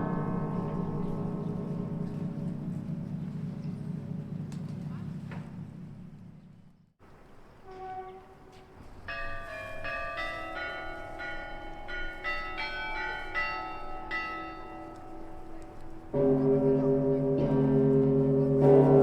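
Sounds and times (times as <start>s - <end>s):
low sustained bell tone: 0.0s - 6.2s, 9.1s - 19.0s
small bells ringing: 9.1s - 18.4s.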